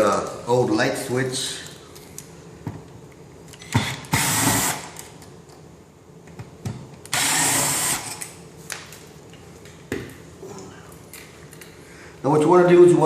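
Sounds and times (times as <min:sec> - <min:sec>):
power drill running: 0:03.8 - 0:05.0, 0:07.1 - 0:08.2.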